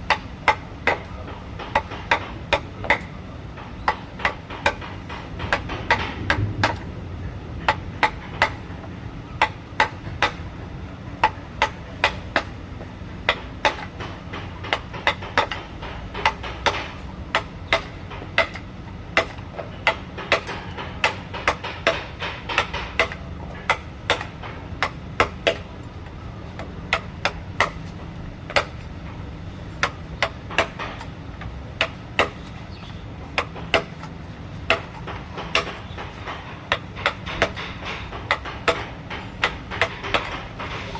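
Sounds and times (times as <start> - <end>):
low steady hum: 0.0 - 40.9
mallet striking chisel into wood: 9.4 - 10.4, 13.3 - 18.6, 19.2 - 25.6, 26.6 - 27.8, 31.8 - 32.4, 33.4 - 34.0, 34.7 - 40.7.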